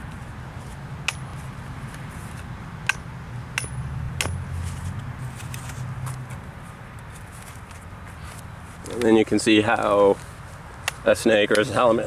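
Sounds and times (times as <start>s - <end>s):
steady low hum: 0.0s - 11.0s
hammer striking a stake: 1.0s - 1.5s, 2.3s - 4.7s.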